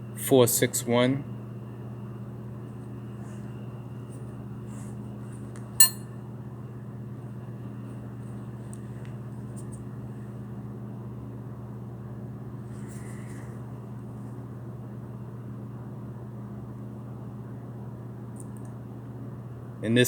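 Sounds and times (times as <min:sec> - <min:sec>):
low machine hum: 0:00.0 - 0:19.8
metal tool clink: 0:05.8 - 0:06.0.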